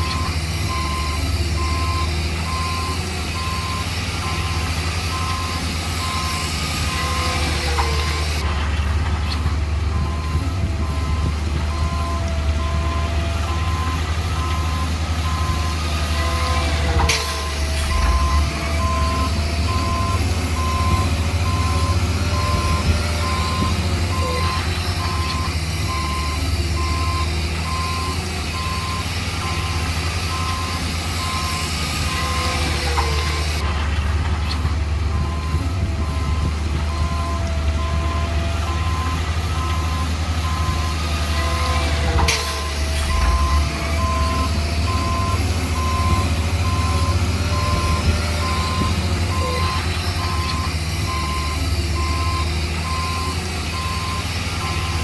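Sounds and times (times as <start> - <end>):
reversing alarm beeping: 0.0 - 8.4, 9.3 - 33.6, 35.1 - 55.0.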